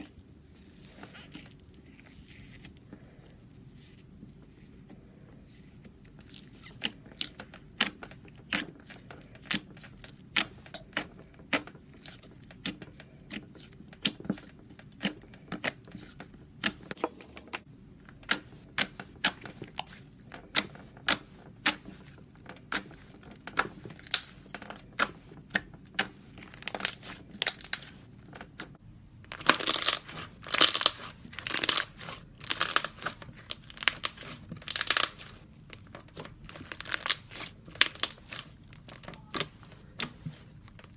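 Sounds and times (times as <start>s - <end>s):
slime clicking and popping: 29.3s - 40.1s.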